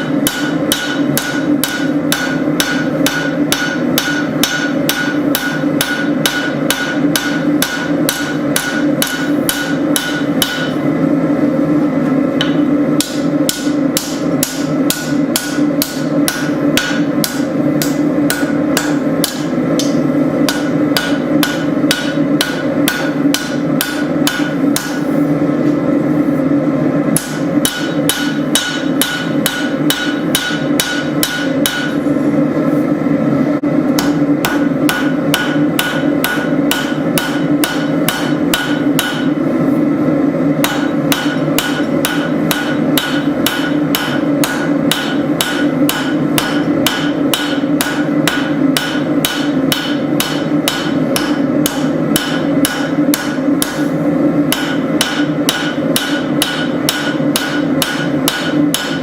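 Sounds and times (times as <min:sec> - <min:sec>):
hammer ringing on anvil: 0:00.0 - 0:10.8, 0:12.4 - 0:25.0, 0:27.2 - 0:32.0, 0:34.0 - 0:39.4, 0:40.6 - 0:53.8, 0:54.5 - 0:59.0
steady background hum: 0:00.0 - 0:59.0.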